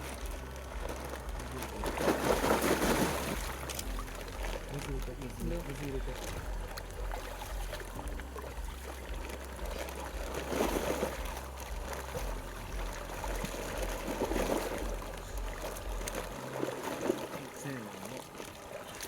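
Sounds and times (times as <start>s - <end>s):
low rumble: 0.0s - 16.7s
water splashing and sloshing: 0.0s - 19.0s.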